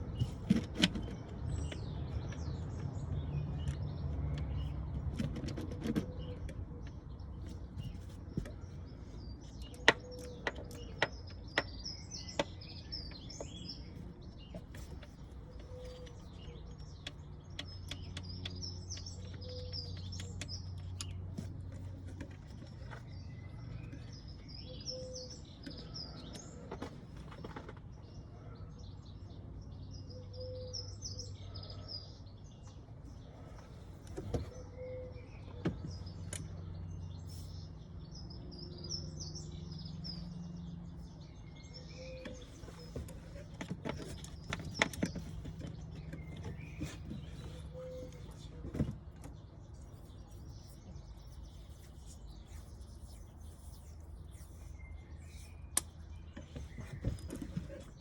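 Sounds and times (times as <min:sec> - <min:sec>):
small birds chirping: 0:00.0 - 0:58.0.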